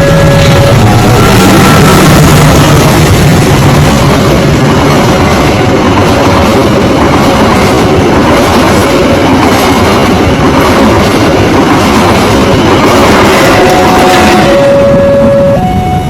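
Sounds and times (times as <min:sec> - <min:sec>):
locomotive horn: 0:00.0 - 0:02.9, 0:13.3 - 0:16.0
train wheel and rail noise: 0:00.0 - 0:16.0.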